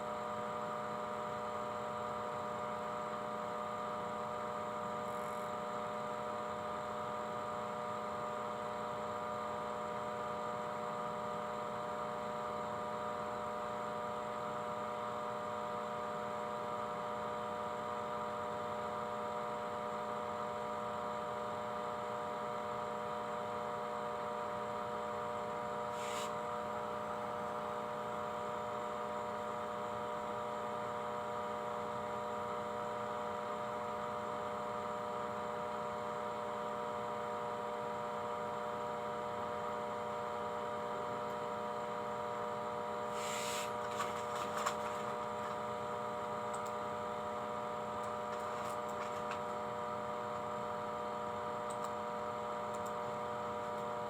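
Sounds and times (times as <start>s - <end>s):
steady electrical hum: 25.4s - 54.0s.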